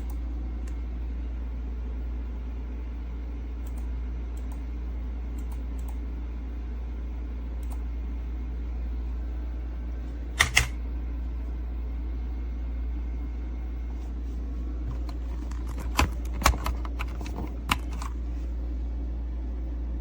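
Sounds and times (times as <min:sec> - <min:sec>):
low hum: 0:00.0 - 0:20.0
mechanical keyboard clicks: 0:10.4 - 0:10.7.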